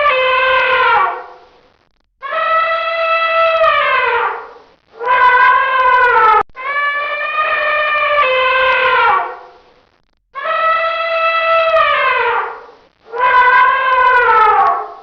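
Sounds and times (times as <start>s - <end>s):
elephant trumpeting: 2.3s - 9.5s, 10.4s - 15.0s.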